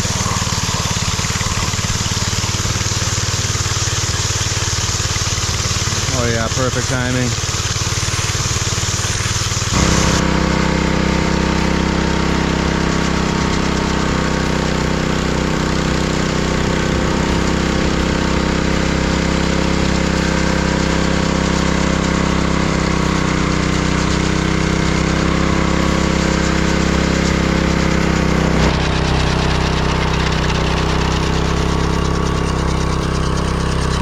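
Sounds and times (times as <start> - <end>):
power trowel engine running: 0.0 - 34.0.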